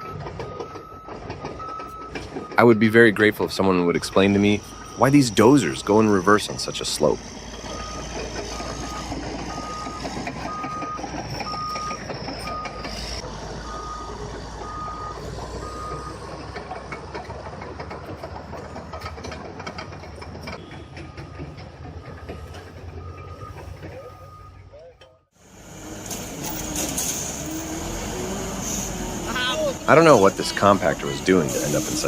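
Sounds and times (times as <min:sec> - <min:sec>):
reversing alarm beeping: 0:00.0 - 0:16.3, 0:19.7 - 0:24.8
bulldozer engine running: 0:00.0 - 0:24.8, 0:25.4 - 0:32.0.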